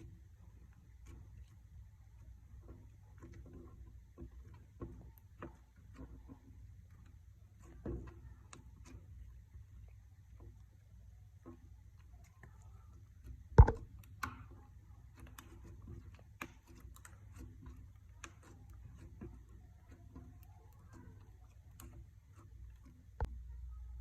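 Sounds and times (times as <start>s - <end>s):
sharp knock: 13.6s - 13.8s.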